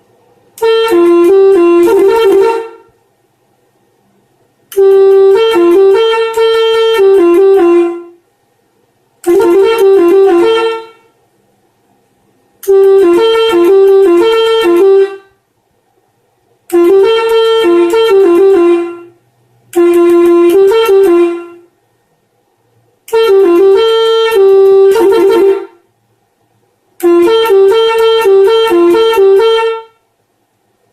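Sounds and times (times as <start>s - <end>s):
air horns playing tunes: 0.6s - 2.9s, 4.7s - 8.2s, 9.2s - 11.2s, 12.6s - 15.4s, 16.7s - 21.7s, 23.1s - 25.8s, 27.0s - 30.0s.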